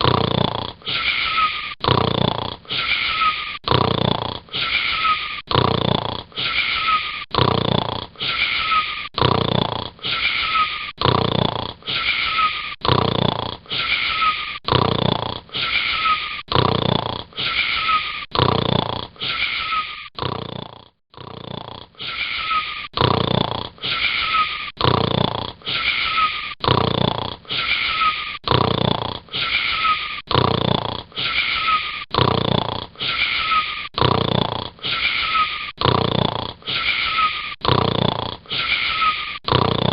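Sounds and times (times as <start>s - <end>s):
wheezy whistling snoring: 0.0s - 39.9s.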